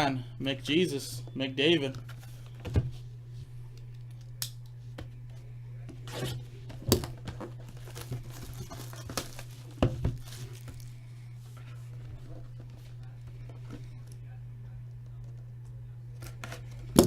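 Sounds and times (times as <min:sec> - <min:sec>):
low electrical hum: 0:00.0 - 0:17.0
packaging being torn open: 0:07.8 - 0:09.6.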